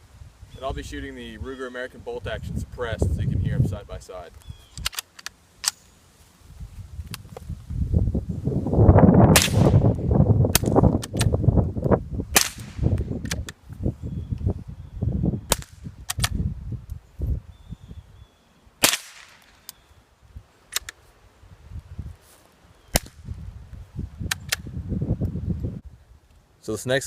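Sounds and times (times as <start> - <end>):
rifle shots cracking: 9.3 - 9.9, 12.3 - 13.4, 18.8 - 19.6.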